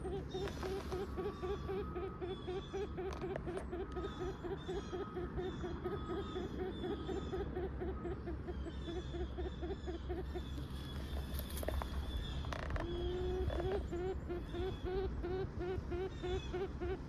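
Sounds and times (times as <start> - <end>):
grouse soft low clucks: 0.0 - 1.6, 2.8 - 4.4, 10.2 - 16.1.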